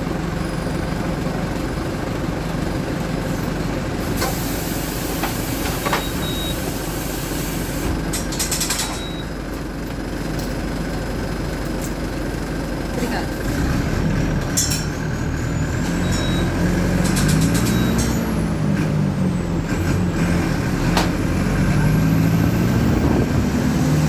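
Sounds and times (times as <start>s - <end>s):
bus engine droning: 0.0s - 24.0s.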